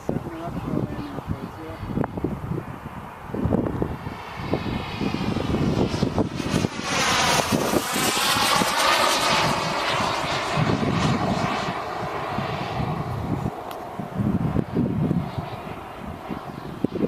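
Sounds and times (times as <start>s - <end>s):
model jet turbine whine: 0.0s - 17.0s
wind buffeting microphone: 0.0s - 17.0s.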